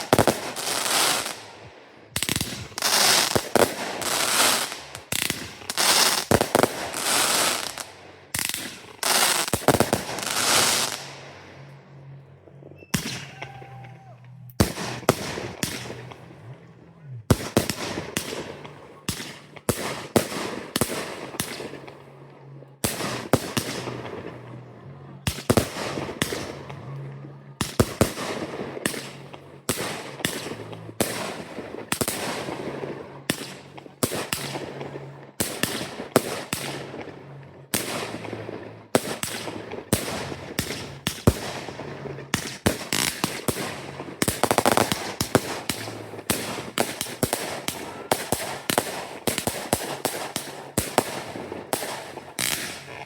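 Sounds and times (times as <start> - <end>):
crackling firework tails: 0.0 - 53.0.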